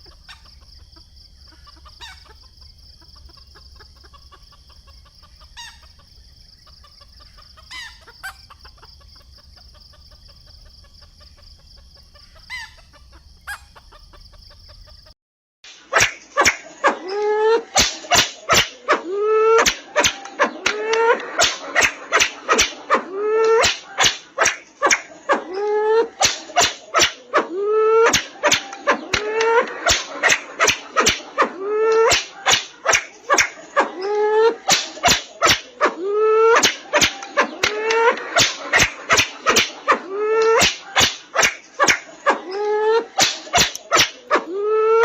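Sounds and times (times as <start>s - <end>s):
bird clicking and calling: 15.7s - 44.5s.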